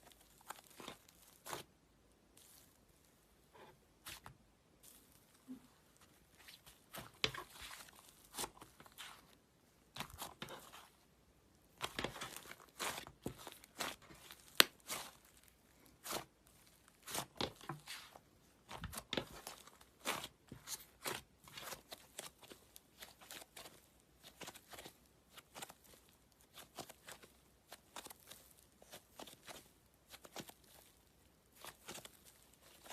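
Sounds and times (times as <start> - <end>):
slime crackling and popping: 11.7 - 32.9.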